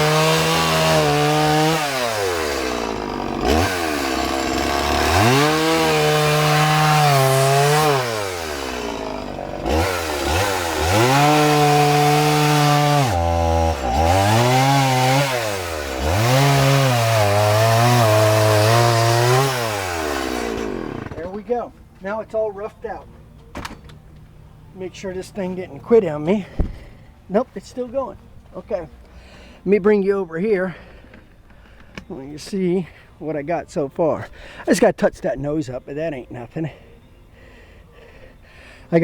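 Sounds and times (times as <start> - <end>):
chainsaw cutting wood: 0.0 - 21.4.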